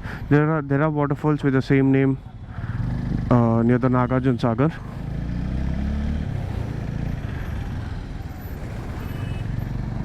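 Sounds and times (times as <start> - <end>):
motorcycle engine running: 2.1 - 10.0.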